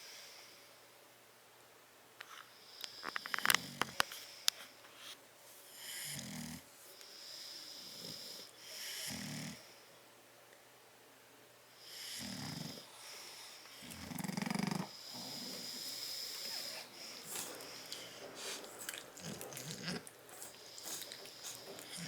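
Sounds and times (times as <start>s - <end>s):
dogs snoring: 2.6s - 4.4s, 5.7s - 9.9s, 11.8s - 22.0s
snuffling breaths: 12.0s - 22.0s.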